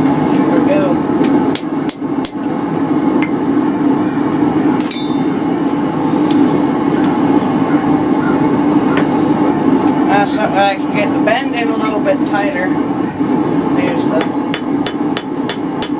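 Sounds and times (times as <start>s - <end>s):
steady low hum: 0.0s - 15.9s
hammer striking metal on anvil: 4.8s - 5.4s, 14.2s - 15.9s.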